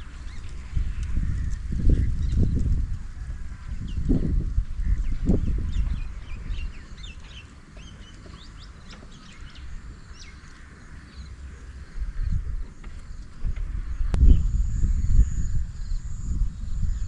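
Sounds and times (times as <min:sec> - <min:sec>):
small songbirds chirping: 0:00.0 - 0:17.0
low rumble: 0:10.7 - 0:17.0.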